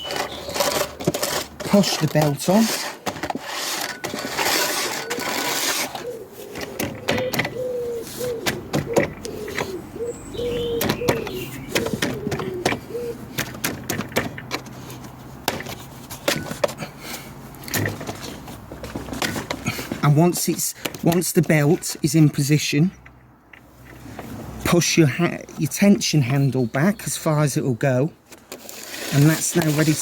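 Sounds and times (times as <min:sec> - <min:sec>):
sanding belt rubbing: 0:00.1 - 0:06.1
light handling clicks and knocks: 0:06.4 - 0:07.7, 0:08.3 - 0:09.8, 0:10.5 - 0:16.8, 0:17.5 - 0:24.4.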